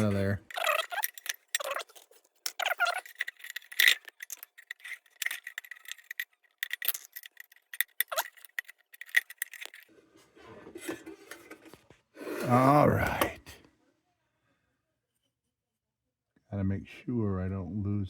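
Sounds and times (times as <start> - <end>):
metallic clicks and clinks: 0.0 - 9.9
metal scraping and handling: 0.0 - 11.8.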